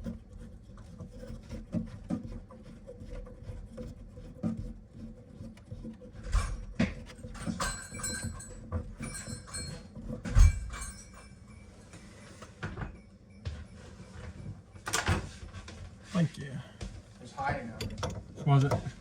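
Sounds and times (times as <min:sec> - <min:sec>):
parts and tools clattering: 0:06.2 - 0:11.7, 0:17.6 - 0:19.0
metallic jingle: 0:07.2 - 0:13.8.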